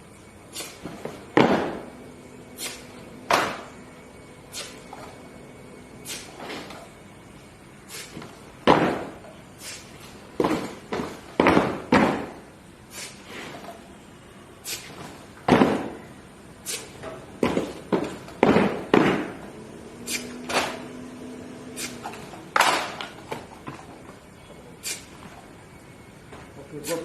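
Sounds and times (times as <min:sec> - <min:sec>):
rifle butts and boots striking ground: 0:00.8 - 0:01.9, 0:08.2 - 0:09.2, 0:10.4 - 0:12.4, 0:15.0 - 0:16.0, 0:17.4 - 0:19.4.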